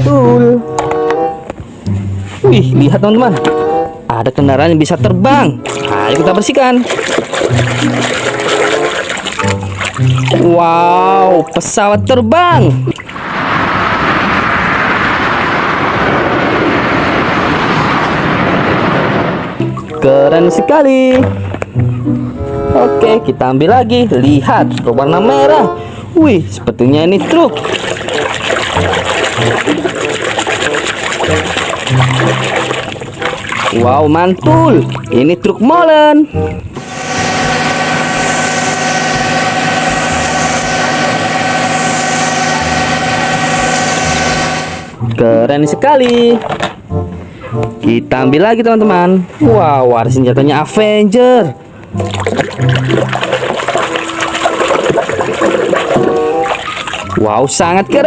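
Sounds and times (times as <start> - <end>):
jet engine rushing: 13.1 - 19.7, 36.8 - 45.0
motor humming: 36.8 - 45.0.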